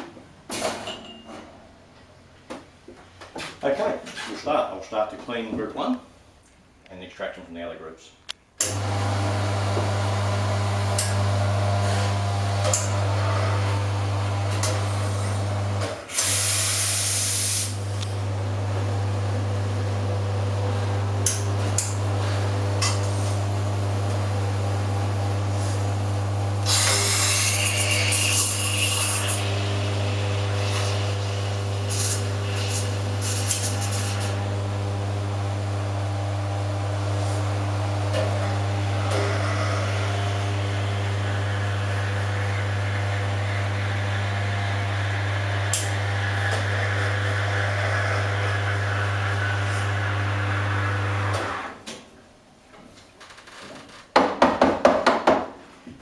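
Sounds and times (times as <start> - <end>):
espresso machine pump hum: 8.7 - 51.7.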